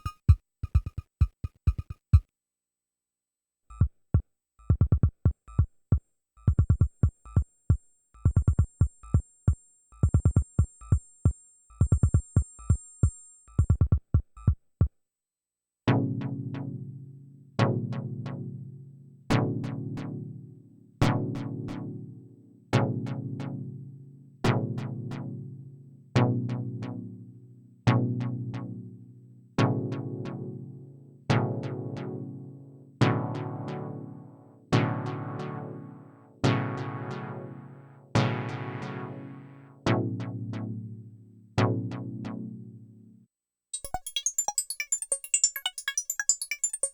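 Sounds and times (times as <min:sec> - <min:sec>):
synthesizer struck notes: 0:00.0 - 0:00.9
synthesizer drum pattern: 0:00.0 - 0:02.2.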